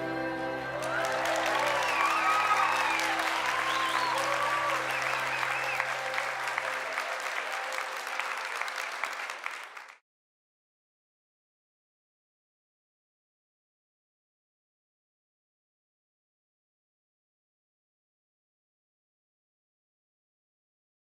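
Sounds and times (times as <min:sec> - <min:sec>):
choir holding last chord: 0:00.0 - 0:07.9
audience applauding: 0:00.6 - 0:10.0.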